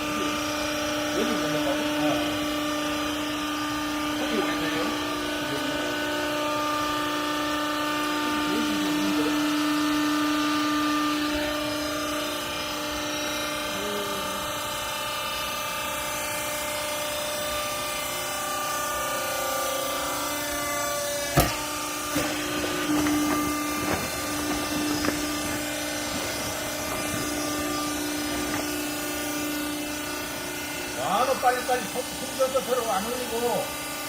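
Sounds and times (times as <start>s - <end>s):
baler machine whine: 0.0s - 34.0s
sharp knocks: 21.2s - 25.4s.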